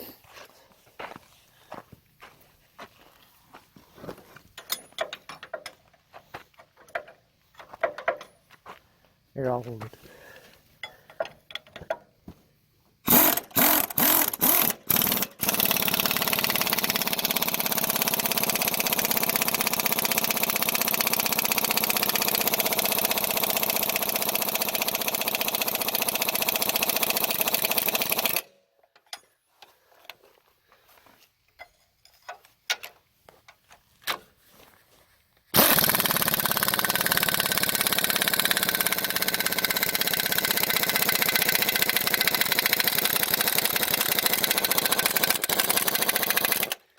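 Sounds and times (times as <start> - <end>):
pneumatic impact wrench hammering: 13.1 - 29.2, 35.6 - 46.9.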